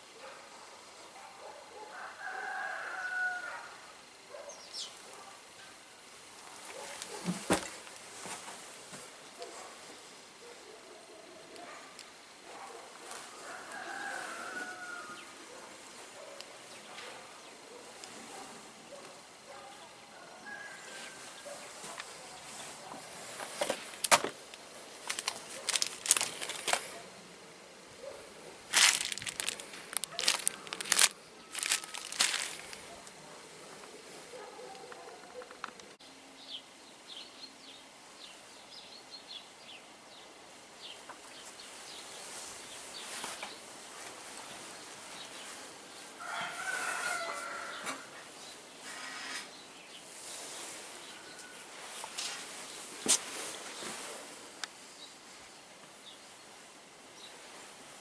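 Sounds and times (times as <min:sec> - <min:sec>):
sharp clicks and rustling: 0:23.4 - 0:27.0, 0:28.7 - 0:33.1.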